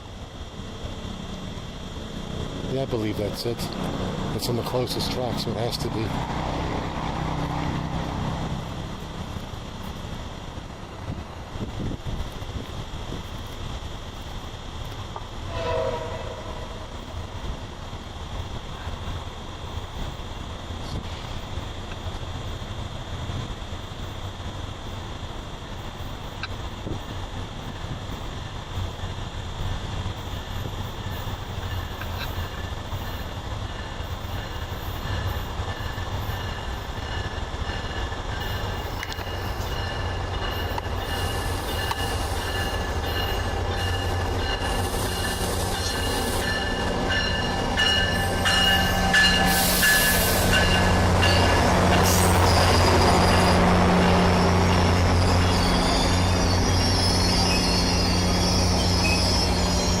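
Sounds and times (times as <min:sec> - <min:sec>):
low locomotive hum: 0:00.0 - 1:00.0
train brakes squealing: 0:15.4 - 0:17.3, 0:30.2 - 1:00.0
air hiss: 0:48.1 - 0:51.3.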